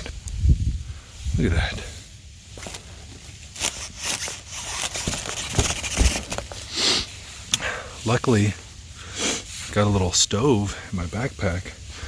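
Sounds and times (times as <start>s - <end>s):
stiff fabric crackling and rustling: 2.5s - 7.2s
sharp clicks and scrapes: 2.6s - 6.8s
frozen zipper being tugged: 3.5s - 6.4s.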